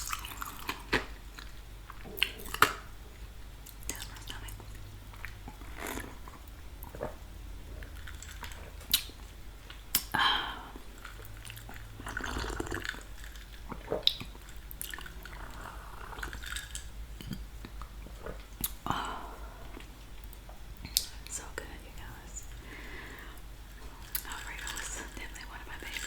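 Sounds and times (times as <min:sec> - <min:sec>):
wet chewing mouth smacks: 0:07.8 - 0:10.2, 0:11.0 - 0:15.6, 0:16.2 - 0:18.9.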